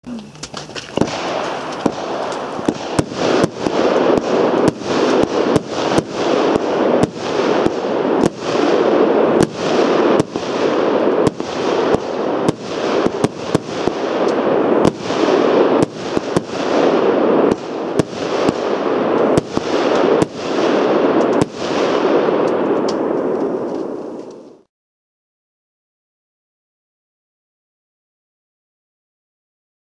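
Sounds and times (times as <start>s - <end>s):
firework hissing: 0.0s - 22.0s
firework cracks: 0.1s - 24.7s.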